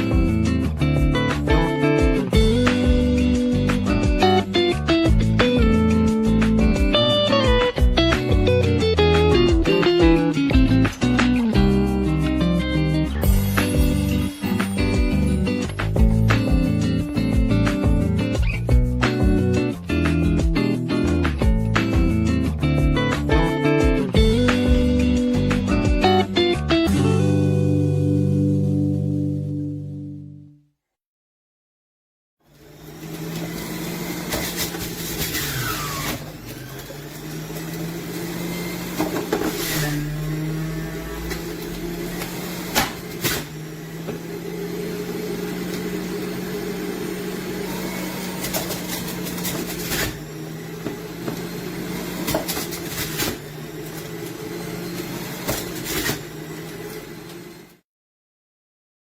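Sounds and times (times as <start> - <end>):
juicer motor humming: 32.4 - 57.8
produce cracking in auger: 32.9 - 40.2, 41.2 - 43.6, 48.2 - 50.2, 52.1 - 54.4, 55.0 - 57.0.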